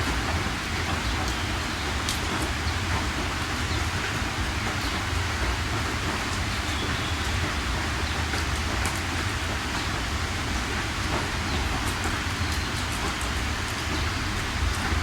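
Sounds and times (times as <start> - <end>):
heavy rain hissing: 0.1 - 15.0.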